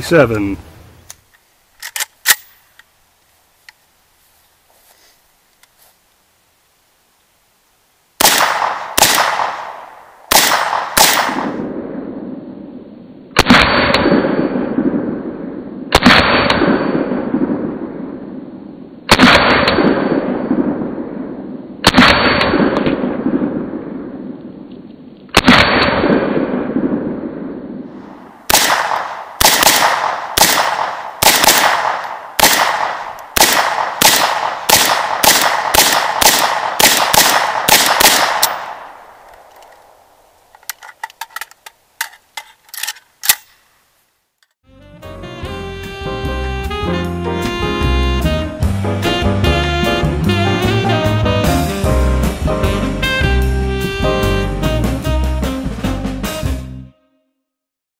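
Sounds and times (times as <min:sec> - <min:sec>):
rifle shots with echo: 0:08.2 - 0:12.7, 0:13.4 - 0:18.4, 0:19.1 - 0:24.4, 0:25.3 - 0:27.8, 0:28.5 - 0:39.3.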